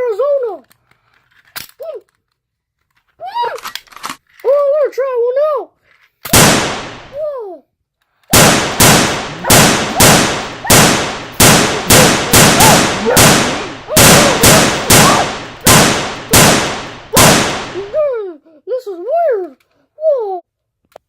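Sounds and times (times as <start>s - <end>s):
toy blaster shots: 8.3s - 18.0s.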